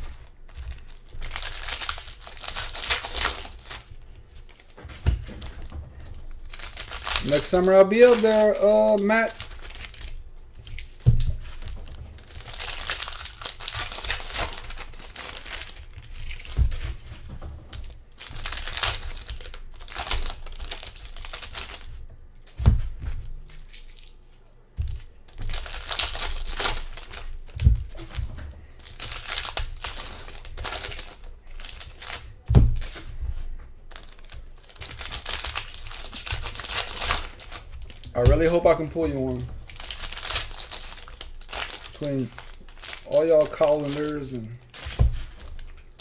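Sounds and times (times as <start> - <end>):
wrapper tearing and crackling: 0.0 - 4.8, 5.4 - 22.1, 23.2 - 33.0, 33.9 - 46.0
dull thumps: 0.0 - 19.5, 22.0 - 23.4, 32.4 - 33.8, 44.7 - 45.6.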